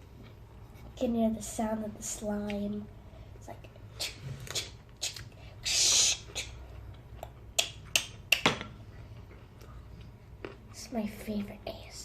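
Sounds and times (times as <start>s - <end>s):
mouth clicks and smacks: 4.0s - 8.6s
short hissing burst: 5.6s - 6.5s.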